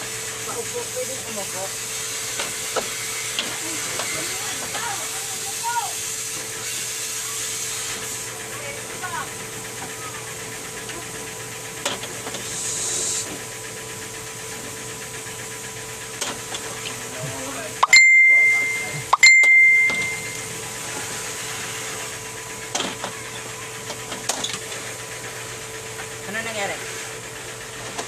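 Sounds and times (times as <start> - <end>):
bell-like dings: 17.8 - 20.4.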